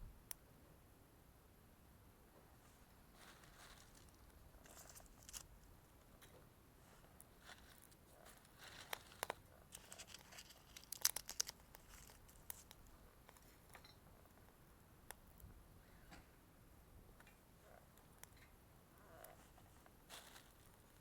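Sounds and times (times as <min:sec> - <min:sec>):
wood fire crackling: 0:07.2 - 0:13.7.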